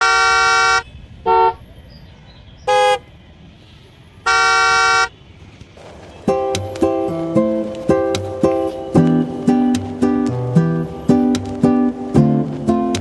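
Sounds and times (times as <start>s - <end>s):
car horn honking: 0.0s - 1.6s, 2.7s - 3.0s, 4.2s - 5.2s.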